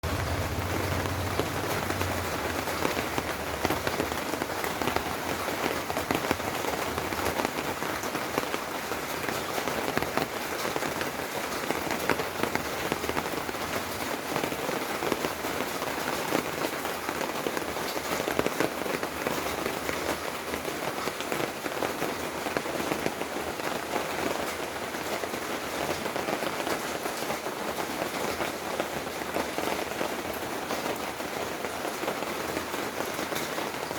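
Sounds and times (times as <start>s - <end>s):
heavy rain hissing: 0.0s - 19.3s
raindrop hits: 0.0s - 33.9s.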